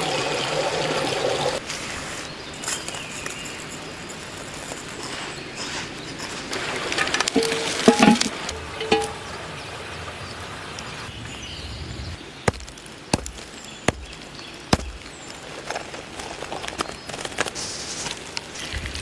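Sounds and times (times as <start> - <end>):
fire sharp pops: 12.5 - 15.4
campfire crackling: 12.5 - 15.5.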